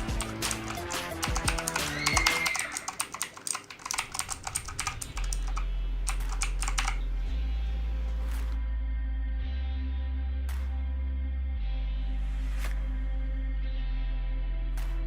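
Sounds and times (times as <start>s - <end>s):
background music with bass: 0.0s - 2.4s, 5.0s - 15.0s
keyboard keys clicking: 0.0s - 7.0s.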